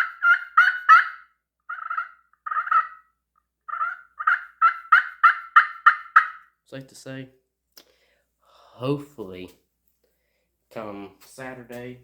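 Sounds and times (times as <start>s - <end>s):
turkey call yelps: 0.0s - 6.5s.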